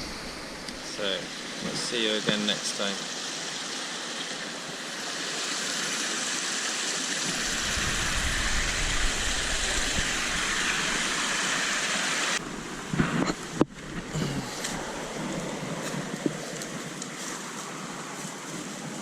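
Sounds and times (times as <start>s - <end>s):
river water rushing: 0.0s - 19.0s
low rumble: 7.3s - 11.4s.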